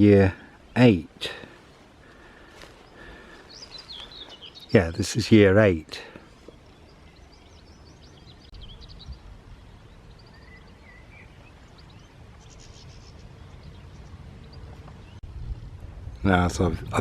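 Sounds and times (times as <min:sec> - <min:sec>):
birds chirping and trilling: 0:00.0 - 0:15.4
low outdoor rumble: 0:00.0 - 0:17.0.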